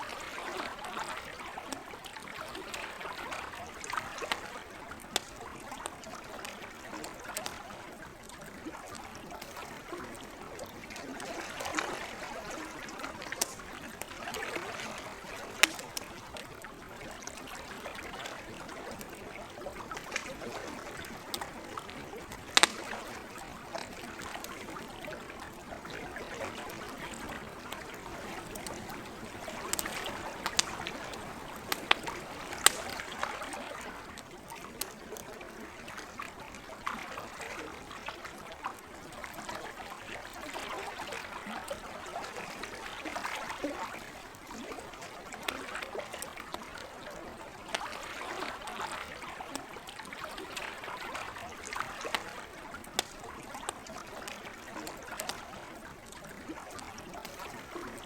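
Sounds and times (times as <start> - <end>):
lake water lapping: 0.0 - 58.0
campfire crackling and popping: 0.3 - 58.0.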